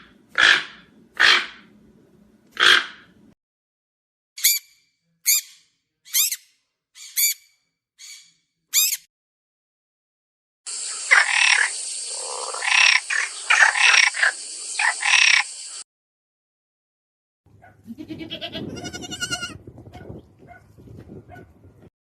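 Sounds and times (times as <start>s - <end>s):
animal calling: 10.7s - 15.6s
steady high hiss: 10.7s - 15.8s.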